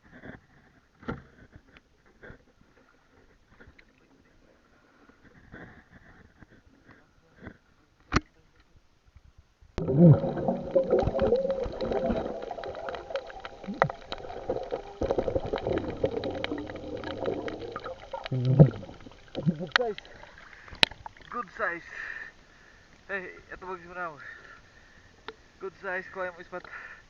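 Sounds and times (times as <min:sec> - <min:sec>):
muffled underwater gurgling: 0:09.8 - 0:21.4.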